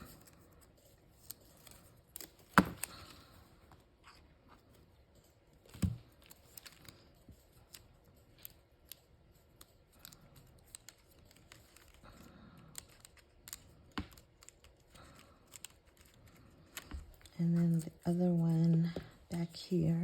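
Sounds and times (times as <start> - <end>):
paper rustling: 0.0 - 20.0.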